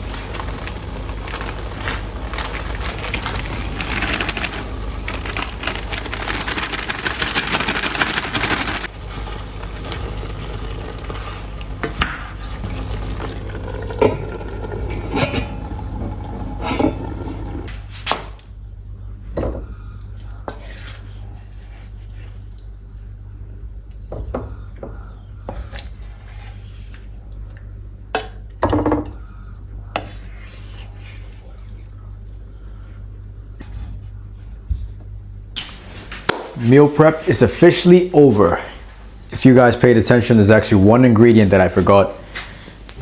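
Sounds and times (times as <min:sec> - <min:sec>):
steady low hum: 0:00.0 - 0:17.9, 0:29.2 - 0:43.0.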